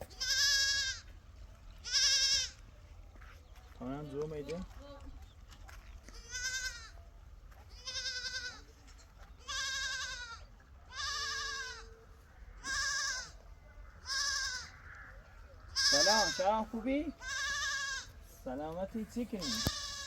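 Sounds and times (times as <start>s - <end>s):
goats bleating: 0.0s - 1.1s, 1.8s - 2.6s, 6.1s - 7.0s, 7.7s - 8.6s, 9.4s - 18.2s, 19.3s - 20.0s.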